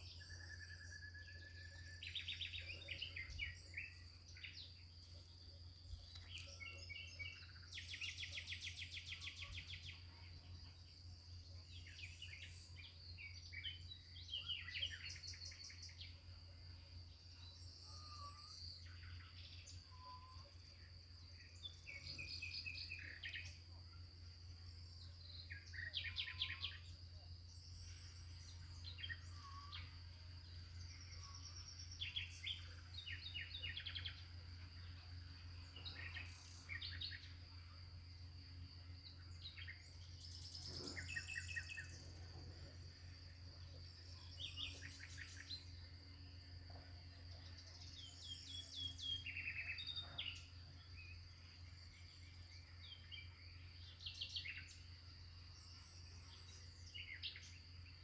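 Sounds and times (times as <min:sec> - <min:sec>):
faint low hum: 0:00.0 - 0:58.0
songbirds chirping and trilling: 0:00.0 - 0:58.0.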